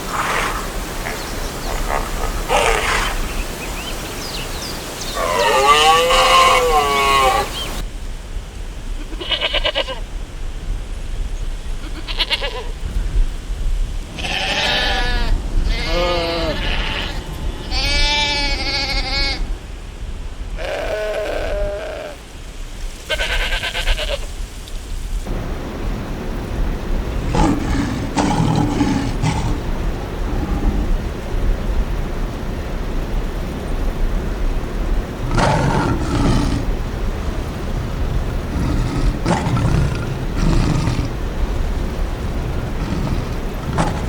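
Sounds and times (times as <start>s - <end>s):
farm animals bleating: 4.8s - 7.8s, 14.2s - 19.5s, 20.6s - 22.2s, 23.1s - 24.2s, 42.3s - 44.0s.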